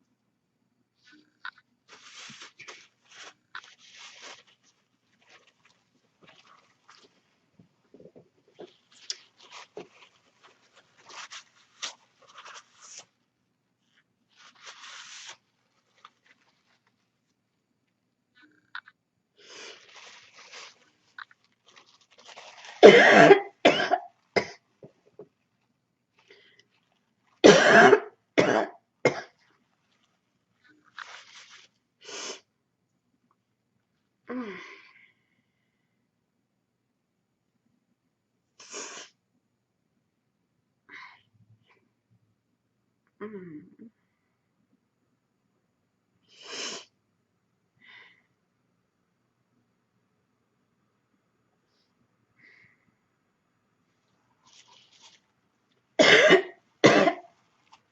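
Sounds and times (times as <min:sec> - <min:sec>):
person coughing: 0:22.8 - 0:24.6, 0:27.4 - 0:29.3, 0:56.0 - 0:57.3
person breathing: 0:47.8 - 0:48.4.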